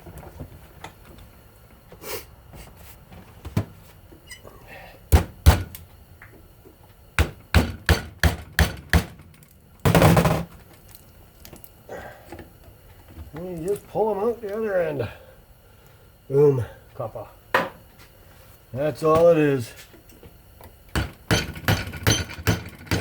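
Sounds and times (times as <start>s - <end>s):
hand tools knocking on metal: 21.0s - 23.0s.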